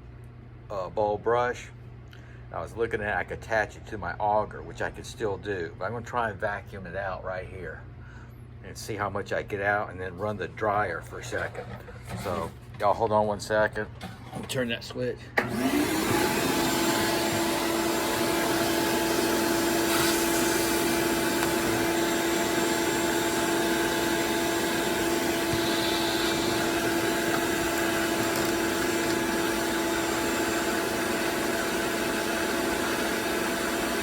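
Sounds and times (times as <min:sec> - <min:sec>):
wet dry vacuum running: 0:15.4 - 0:34.0.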